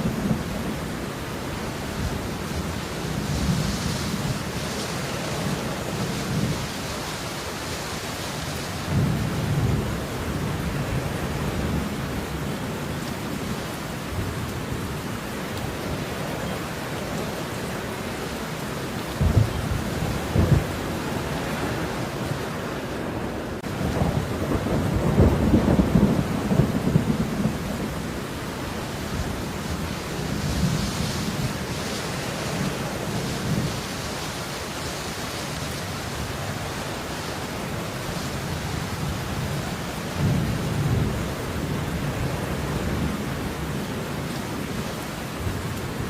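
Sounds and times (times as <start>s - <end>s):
steady rain: 0.0s - 46.0s
low thunder rumbles: 8.7s - 15.1s, 19.1s - 22.3s, 23.1s - 34.0s, 37.6s - 46.0s.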